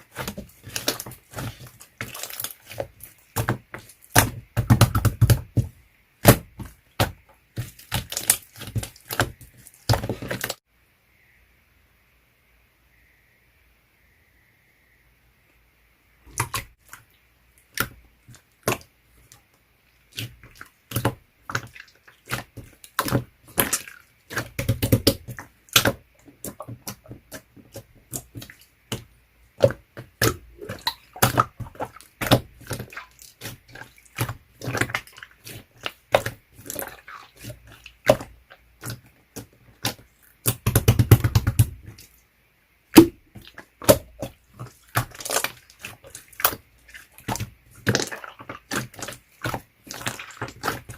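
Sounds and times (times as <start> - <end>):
slime clicking and popping: 39.8 - 41.8.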